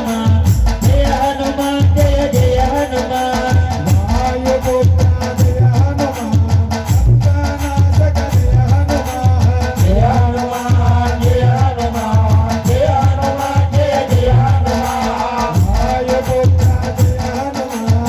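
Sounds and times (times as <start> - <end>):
low drum beat: 0.0 - 18.0.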